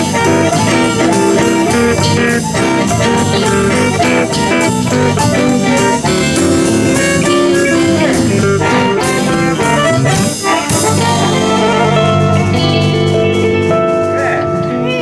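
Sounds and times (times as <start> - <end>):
drums: 0.0 - 15.0
electric guitars: 0.0 - 15.0
live blues band instrumental: 0.0 - 15.0
saxophone: 0.0 - 15.0.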